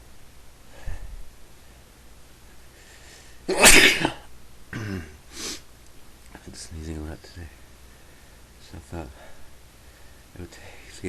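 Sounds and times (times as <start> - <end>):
person sneezing: 3.5 - 4.2, 4.8 - 5.6.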